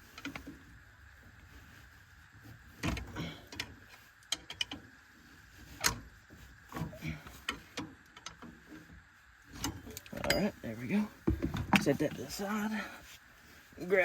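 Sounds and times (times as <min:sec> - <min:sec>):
metal clinks and scrapes: 0:09.5 - 0:10.9.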